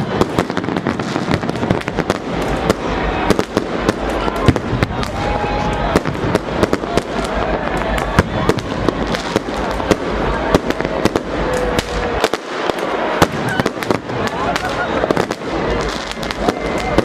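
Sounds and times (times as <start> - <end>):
distant fireworks rumbling: 0.0 - 17.0
firecrackers banging: 0.0 - 17.0.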